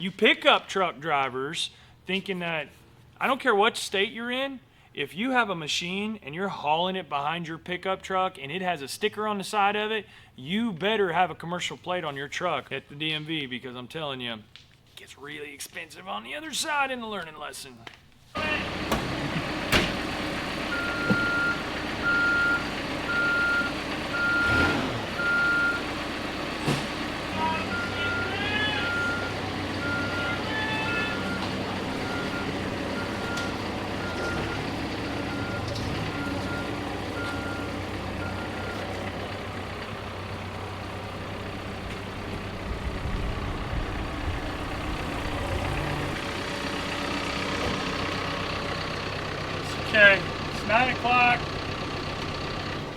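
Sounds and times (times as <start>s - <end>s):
vehicle engine rumble: 18.4s - 52.9s
backup alarm beeping: 20.7s - 25.9s, 27.4s - 38.8s.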